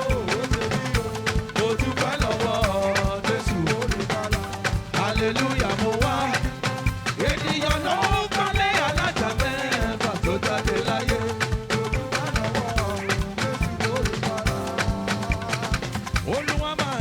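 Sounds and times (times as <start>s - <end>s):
live gospel band music: 0.0s - 17.0s
quick percussion beat: 0.0s - 17.0s.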